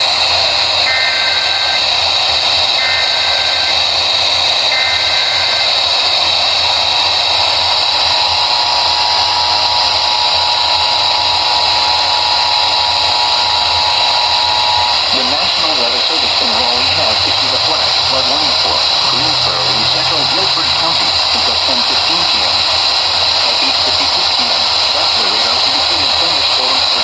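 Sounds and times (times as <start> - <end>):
data bursts over radio: 0.0 - 6.5, 8.2 - 27.0
heavy hiss: 0.0 - 27.0
two-tone attention signal: 0.8 - 6.2, 12.0 - 22.5.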